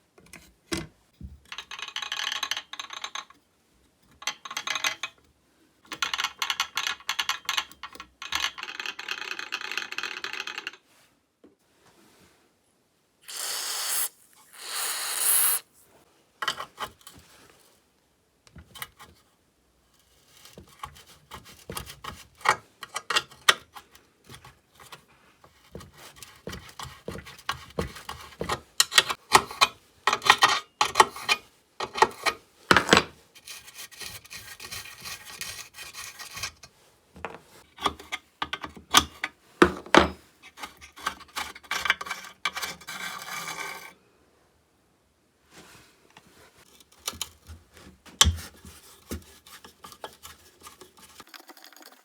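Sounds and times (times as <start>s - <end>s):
short hissing bursts: 13.2s - 15.7s.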